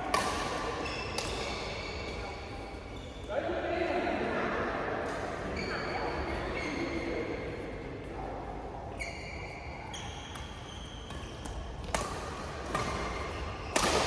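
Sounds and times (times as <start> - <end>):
racket hitting shuttlecock: 0.0 - 1.7, 10.3 - 14.0
shoes squeaking on court floor: 0.7 - 3.2, 5.5 - 7.2, 9.0 - 14.0.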